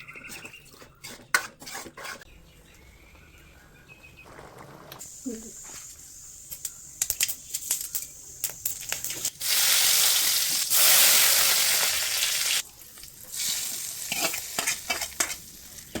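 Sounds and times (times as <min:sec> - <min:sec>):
spoon scraping a pan: 0:00.2 - 0:02.3, 0:13.5 - 0:16.0
food sizzling in hot oil: 0:05.0 - 0:16.0.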